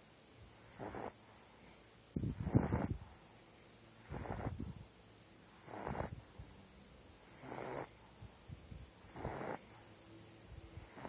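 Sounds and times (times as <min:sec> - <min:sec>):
puppy snoring: 0:00.6 - 0:01.2, 0:02.2 - 0:03.0, 0:04.0 - 0:04.7, 0:05.6 - 0:06.3, 0:07.3 - 0:08.0, 0:09.0 - 0:09.8, 0:10.8 - 0:11.0.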